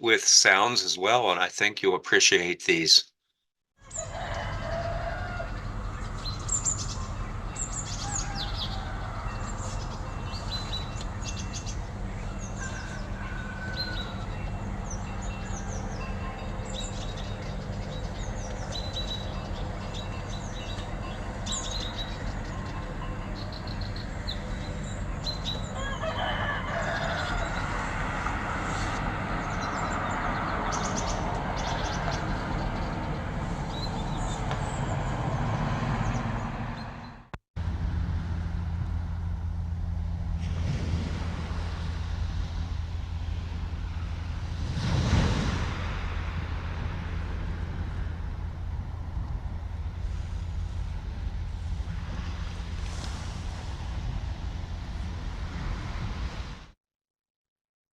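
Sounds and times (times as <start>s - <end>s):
birds chirping: 3.8s - 37.2s
steady low hum: 37.6s - 56.2s
steady low drone: 37.6s - 56.6s.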